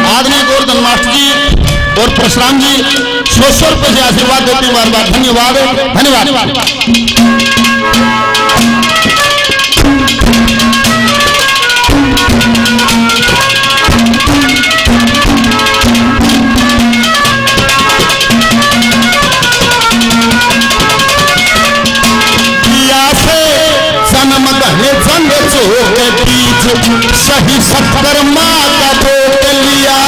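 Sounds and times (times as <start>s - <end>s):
drum beats: 0.0s - 30.0s
melody instrument playing: 0.0s - 30.0s
rattling percussion: 0.0s - 30.0s.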